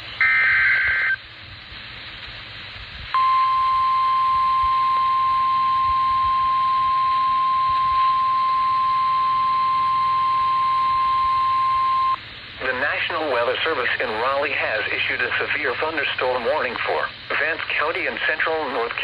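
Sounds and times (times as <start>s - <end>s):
radio hiss: 0.0s - 19.0s
steady alarm tone: 0.2s - 1.2s, 3.2s - 12.2s.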